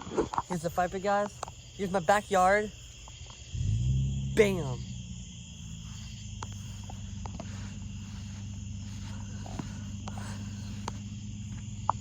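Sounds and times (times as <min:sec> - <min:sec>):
high insect chirring: 0:00.0 - 0:12.0
low steady hum: 0:03.5 - 0:12.0.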